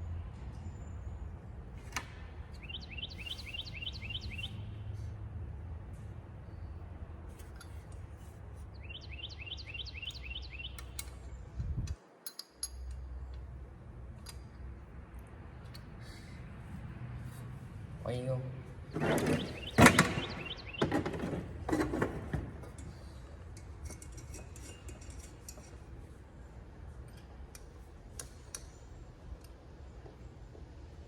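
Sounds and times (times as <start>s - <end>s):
songbird chirping: 2.5s - 4.8s, 8.6s - 11.6s, 18.1s - 22.0s.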